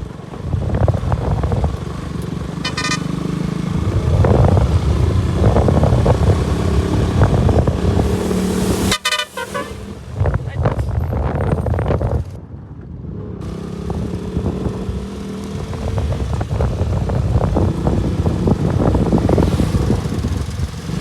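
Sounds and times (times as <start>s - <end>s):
motorcycle engine running: 0.0s - 12.4s, 13.4s - 21.0s
vehicle horn tooting: 2.6s - 3.2s, 8.9s - 10.0s.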